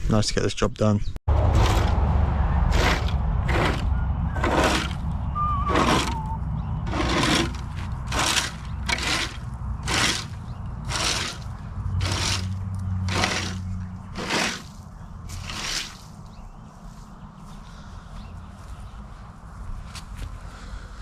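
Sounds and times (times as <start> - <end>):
low engine hum: 1.3 - 20.7
regular scraping strokes: 1.4 - 17.1.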